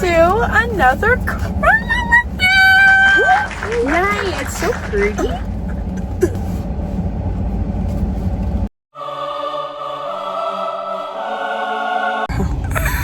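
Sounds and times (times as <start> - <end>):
low steady rumble: 0.0 - 8.7, 12.3 - 13.0
music with choir-like voices: 9.0 - 12.3.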